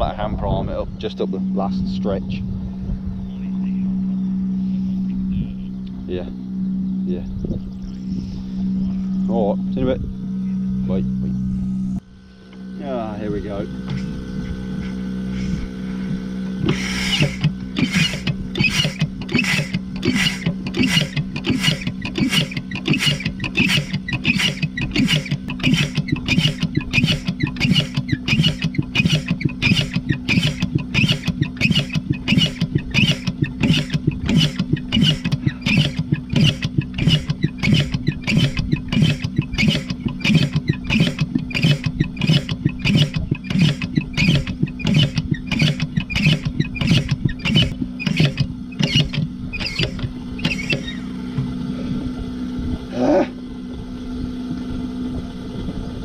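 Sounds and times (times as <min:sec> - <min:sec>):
pump engine running: 0:00.0 - 0:56.0
hand primer strokes: 0:13.4 - 0:51.0.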